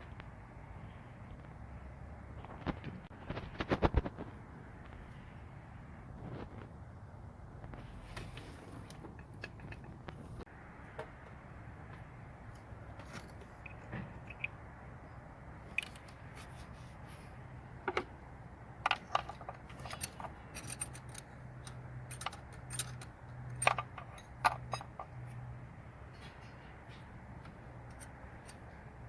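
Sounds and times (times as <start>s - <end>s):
metal tools clinking: 18.8s - 25.4s, 27.8s - 28.8s.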